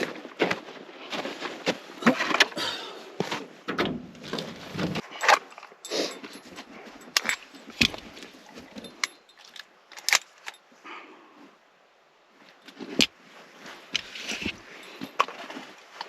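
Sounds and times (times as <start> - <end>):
metal gear clinking and rattling: 5.0 - 10.6, 14.4 - 15.6.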